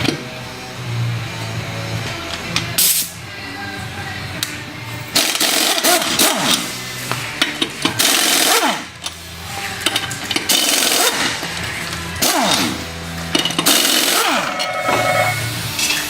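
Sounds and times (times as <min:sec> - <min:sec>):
air impact wrench bursts: 0:05.2 - 0:06.7, 0:08.0 - 0:08.9, 0:10.5 - 0:11.3, 0:12.2 - 0:12.8, 0:13.6 - 0:15.4.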